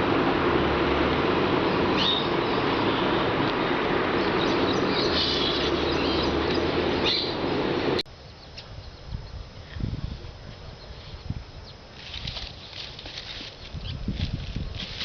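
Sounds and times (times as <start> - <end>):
steady rushing noise: 0.0 - 8.2
small birds chirping: 4.1 - 7.4, 8.2 - 9.4.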